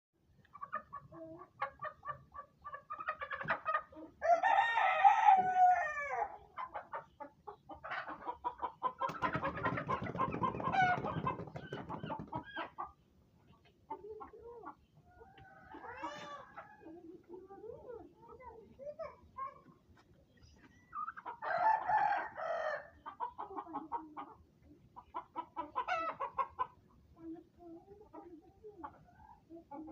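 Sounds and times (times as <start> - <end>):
chickens clucking: 0.3 - 29.9
rooster crowing: 4.2 - 6.3, 21.4 - 22.9.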